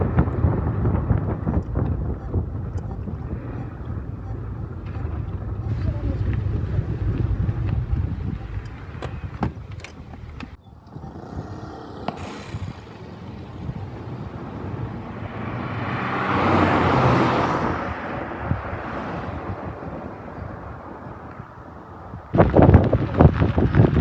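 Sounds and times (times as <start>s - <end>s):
sharp clicks: 0.0s - 5.8s.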